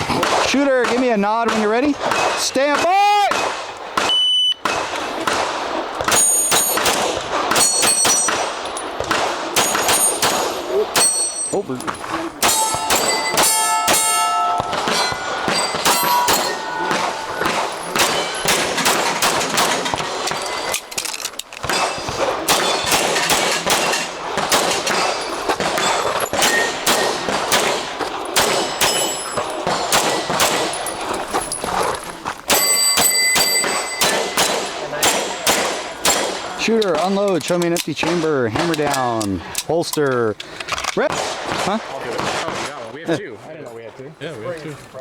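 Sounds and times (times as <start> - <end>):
pistol shots: 0.0 - 20.9, 21.6 - 31.0, 32.5 - 37.2
steel target ringing clang: 6.1 - 6.9, 7.6 - 8.4, 9.6 - 11.8, 12.4 - 20.8, 24.9 - 27.4, 28.4 - 30.7, 32.5 - 35.7.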